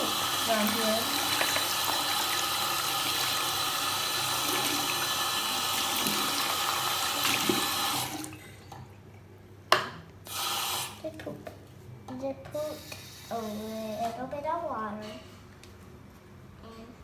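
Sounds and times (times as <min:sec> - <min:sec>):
tap water running into sink: 0:00.0 - 0:08.8.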